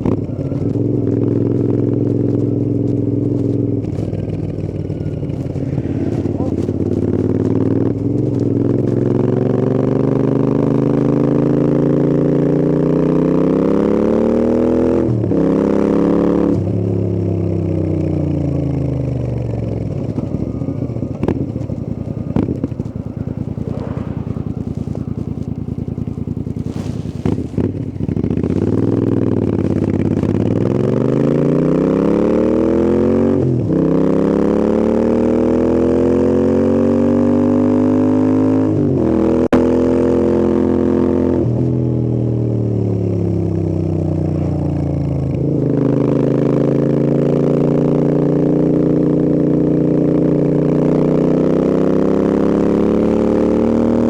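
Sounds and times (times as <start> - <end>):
exhaust pops on overrun: 0.0 - 9.9, 19.0 - 31.6
motorcycle engine revving: 0.0 - 54.0.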